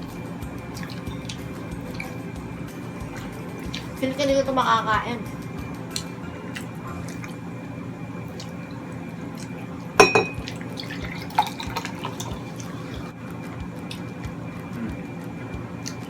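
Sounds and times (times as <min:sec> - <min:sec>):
room hum: 0:00.0 - 0:16.0
tableware clinking: 0:10.0 - 0:10.6.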